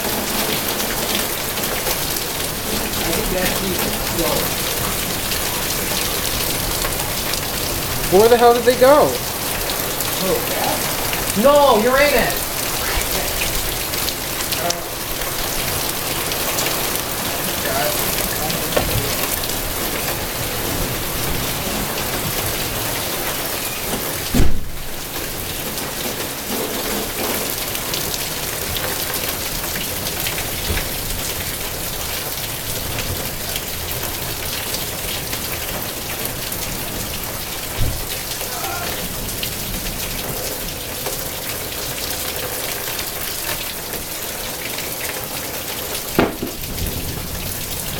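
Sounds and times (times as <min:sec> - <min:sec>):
heavy rain pouring: 0:00.0 - 0:47.9
low thump: 0:24.3 - 0:24.9, 0:46.2 - 0:46.9.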